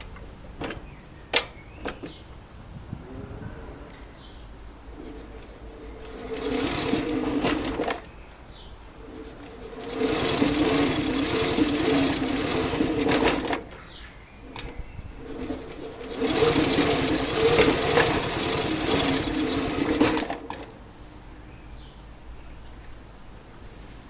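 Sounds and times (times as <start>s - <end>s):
small engine running: 5.0s - 8.1s, 9.0s - 13.7s, 14.5s - 20.7s.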